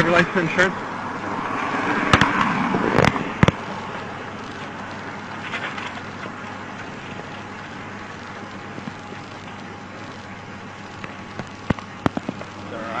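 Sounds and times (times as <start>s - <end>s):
roadside traffic: 0.0s - 13.0s
sharp clicks or knocks: 2.0s - 3.6s.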